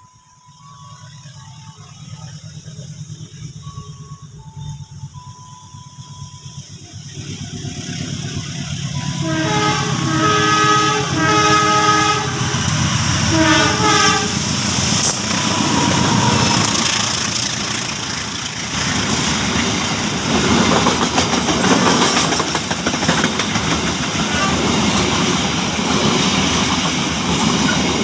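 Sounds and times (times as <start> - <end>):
train rumbling past: 0.0 - 28.0
locomotive horn blasts: 9.0 - 14.6, 15.3 - 17.2, 24.2 - 25.2
wheels clattering on rails: 11.7 - 28.0.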